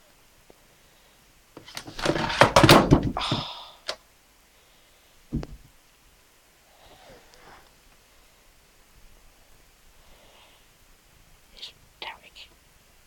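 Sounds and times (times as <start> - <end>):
clock clattering on floor: 1.6 - 3.1
thud: 2.0 - 3.5, 5.3 - 5.7.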